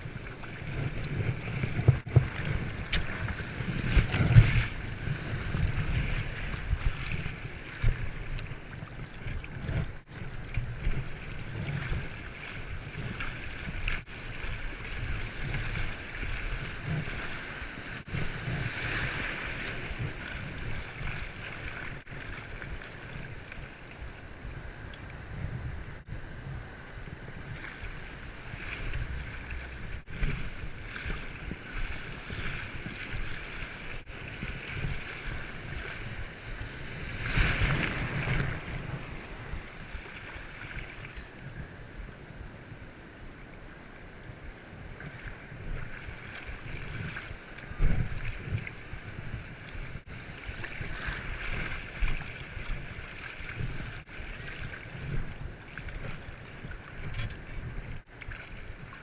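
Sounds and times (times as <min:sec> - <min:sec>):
ocean waves washing against rocks: 0:00.0 - 0:23.6, 0:24.2 - 0:43.0
wind buffeting microphone: 0:00.0 - 0:59.0.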